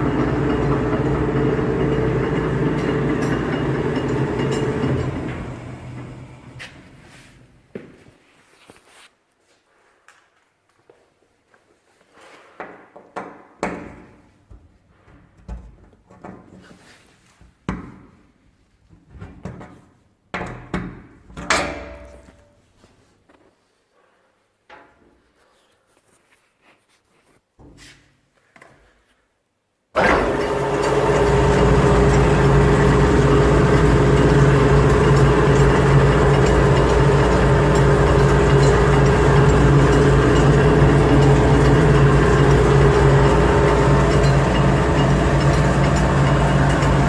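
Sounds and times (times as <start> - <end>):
meat grinder running: 0.0 - 6.7, 30.0 - 47.0.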